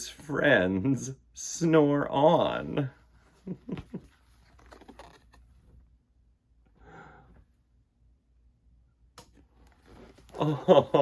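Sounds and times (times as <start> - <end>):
soft breathy sound: 6.7 - 7.6.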